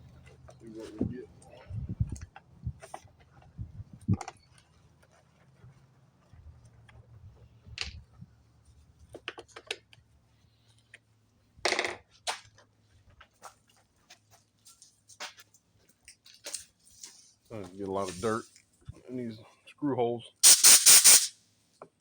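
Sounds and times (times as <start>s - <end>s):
screwdriver and screws clicking: 20.4s - 21.3s.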